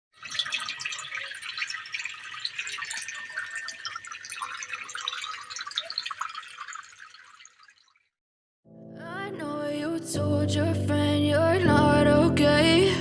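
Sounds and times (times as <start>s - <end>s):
water trickling and splashing: 0.1s - 8.2s.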